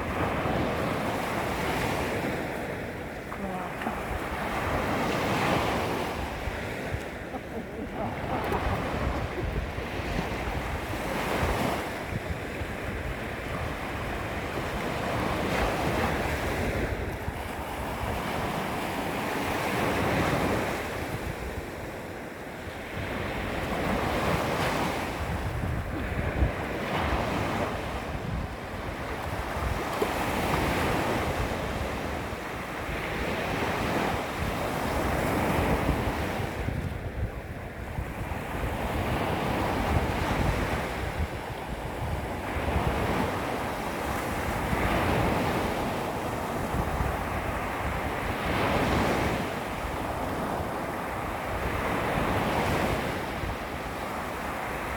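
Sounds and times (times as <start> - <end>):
small waves lapping on shore: 0.0 - 54.9
wind buffeting microphone: 0.0 - 54.9.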